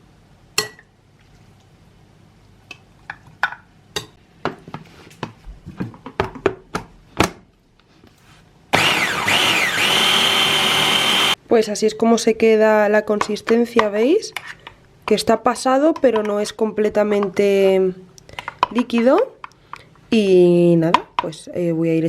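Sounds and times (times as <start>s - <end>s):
hand blender motor whining: 8.8s - 11.4s.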